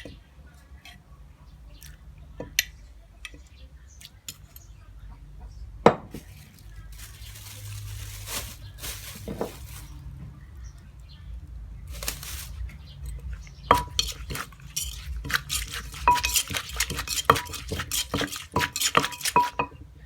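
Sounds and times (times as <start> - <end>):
spoon clinking against a dish: 13.1 - 19.8.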